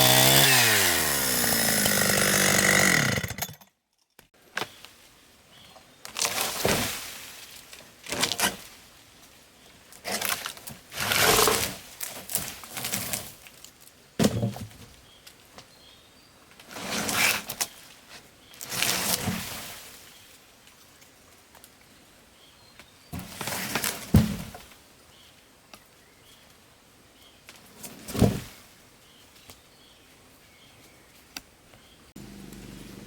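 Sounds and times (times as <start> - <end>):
branches and leaves rustling: 4.5 - 33.0
steady low hum: 32.2 - 33.0.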